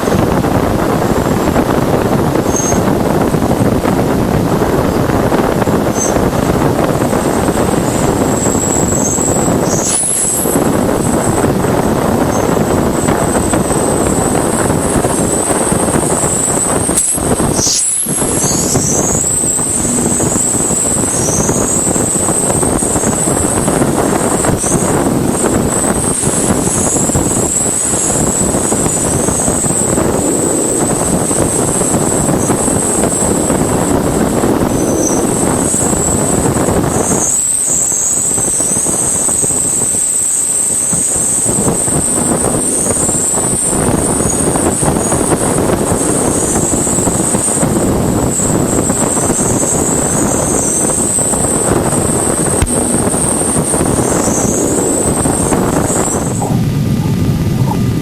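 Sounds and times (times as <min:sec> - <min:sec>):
loud rushing hiss: 0:00.0 - 0:58.0
thin high tone: 0:07.2 - 0:30.9.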